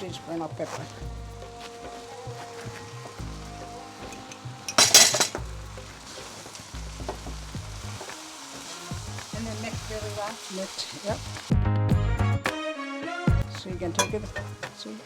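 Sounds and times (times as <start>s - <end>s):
noodles sizzling in a pan: 0.0s - 11.6s, 13.5s - 15.0s
utensils stirring and tossing: 4.0s - 11.4s.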